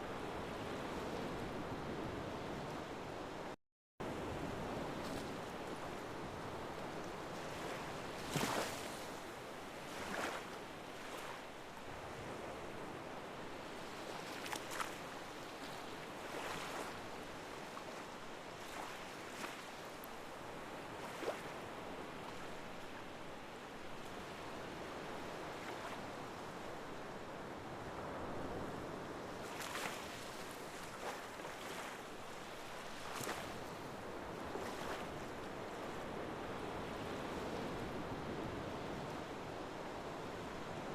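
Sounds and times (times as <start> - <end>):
waves breaking: 4.6 - 11.5, 14.0 - 17.0, 18.6 - 20.1, 20.7 - 23.0, 29.2 - 40.9.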